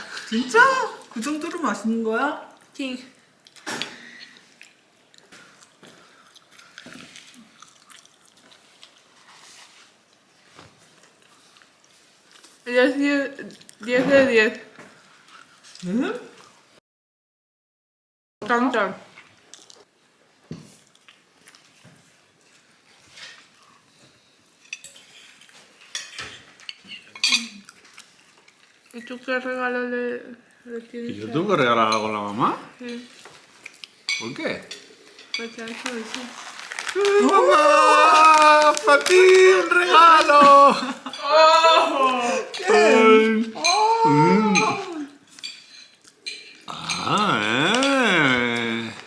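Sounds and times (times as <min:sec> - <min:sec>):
quiet chewing: 0:03.4 - 0:12.7, 0:13.4 - 0:13.9, 0:14.7 - 0:16.7, 0:20.7 - 0:29.0, 0:33.0 - 0:34.1
forks clinking on plates: 0:25.9 - 0:27.6, 0:44.6 - 0:47.1.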